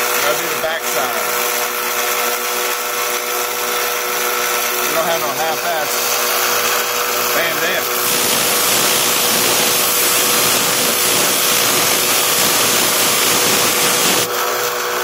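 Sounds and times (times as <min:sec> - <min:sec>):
grinder motor humming: 0:00.0 - 0:15.0
blade grinding hiss: 0:07.4 - 0:14.3.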